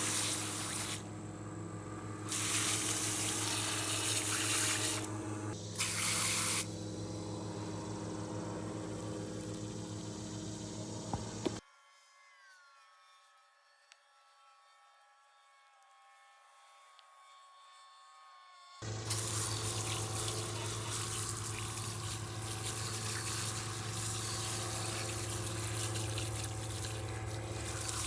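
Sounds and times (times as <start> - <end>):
steady low hum: 0.0 - 11.6, 18.8 - 28.0
thin steady tones: 0.0 - 11.6
water spraying on metal: 0.0 - 11.6, 18.8 - 28.0.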